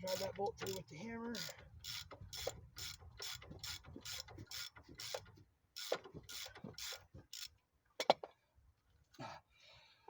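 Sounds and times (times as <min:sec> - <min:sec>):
ratchet wrench clicking: 0:00.0 - 0:05.2.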